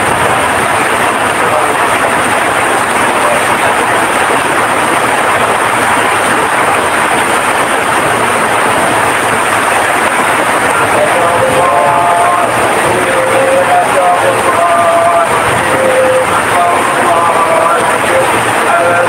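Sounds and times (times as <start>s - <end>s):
heavy rain pouring: 0.0s - 19.0s
person speaking: 10.7s - 19.0s.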